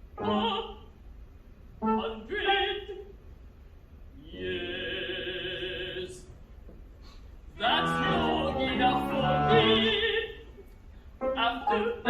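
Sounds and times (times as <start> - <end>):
operatic singing voice: 0.2 - 0.9, 1.8 - 3.0, 4.2 - 6.4, 7.6 - 10.6, 11.2 - 12.0.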